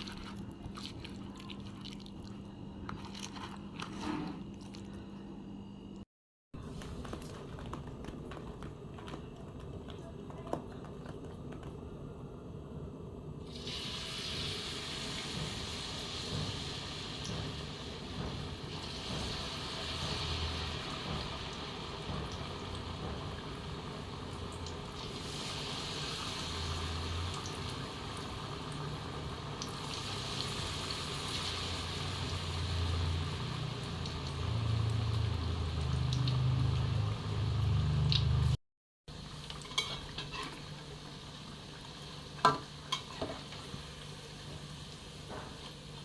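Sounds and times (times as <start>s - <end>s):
food sizzling in hot oil: 13.5s - 46.0s.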